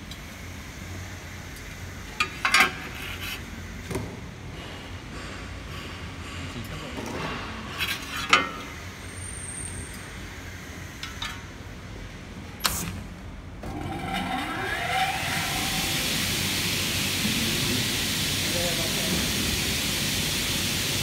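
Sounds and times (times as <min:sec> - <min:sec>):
saw motor whining: 0:13.6 - 0:17.2.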